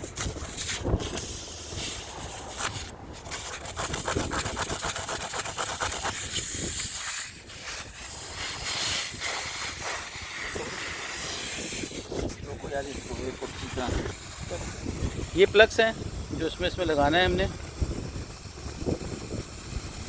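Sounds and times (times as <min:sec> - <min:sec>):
air hissing from tyre: 0:00.0 - 0:20.0
reamer rasping in tyre hole: 0:00.0 - 0:20.0.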